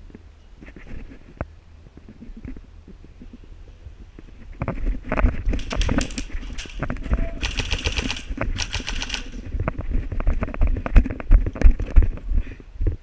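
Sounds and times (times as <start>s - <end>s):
rustling of movement: 0.0s - 13.0s
airsoft gun full-auto bursts: 7.4s - 9.4s.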